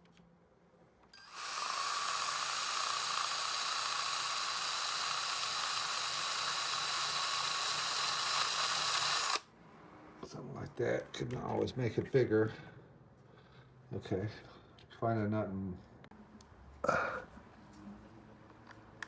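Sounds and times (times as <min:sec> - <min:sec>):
electric drill whining: 0:01.1 - 0:09.5.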